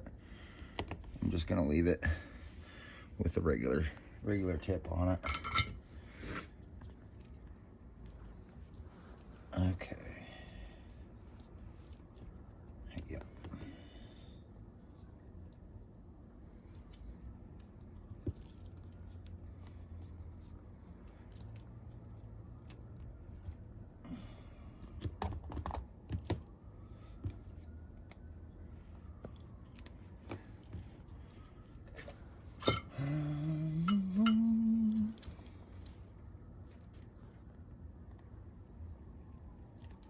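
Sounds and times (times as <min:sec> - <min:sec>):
person humming rising pitch: 0:32.9 - 0:35.2.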